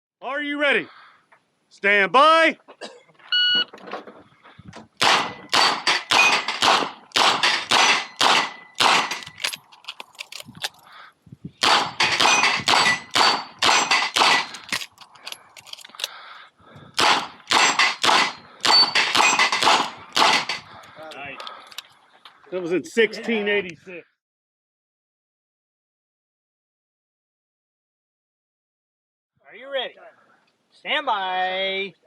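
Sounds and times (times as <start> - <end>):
steel targets ringing: 5.5 - 6.6, 7.4 - 9.1, 12.0 - 14.2, 17.5 - 19.7.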